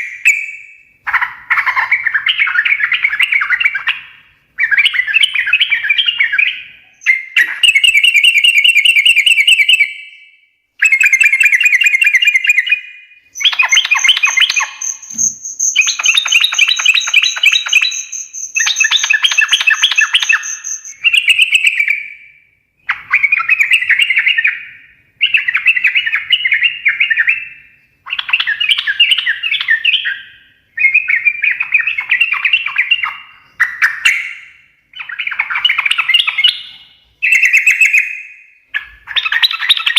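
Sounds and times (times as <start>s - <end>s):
bird singing chattering phrases: 12.5s - 21.4s.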